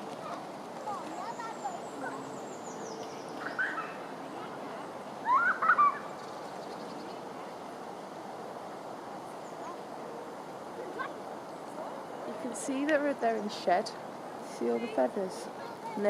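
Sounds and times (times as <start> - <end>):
steady background hiss: 0.0 - 16.0
short bird calls: 0.2 - 7.2.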